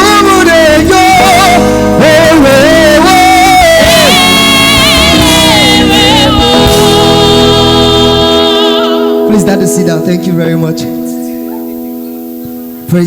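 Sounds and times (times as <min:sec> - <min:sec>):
person singing with vibrato: 0:00.0 - 0:09.4
sustained keyboard chords: 0:00.0 - 0:13.0.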